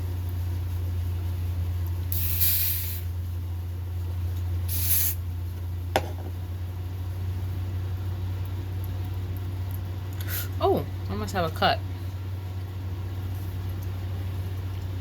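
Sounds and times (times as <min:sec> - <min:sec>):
hairspray hissing: 0:02.2 - 0:03.0, 0:04.7 - 0:05.2.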